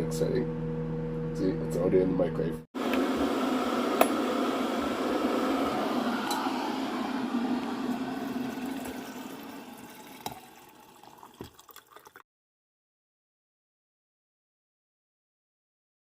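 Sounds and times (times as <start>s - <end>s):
water rushing: 2.8s - 12.2s.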